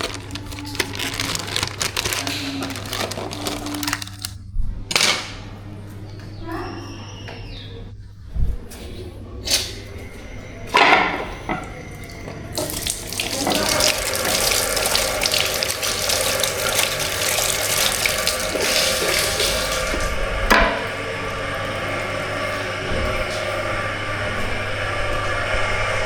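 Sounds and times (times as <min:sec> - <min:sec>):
tap water running into sink: 0:12.0 - 0:21.0.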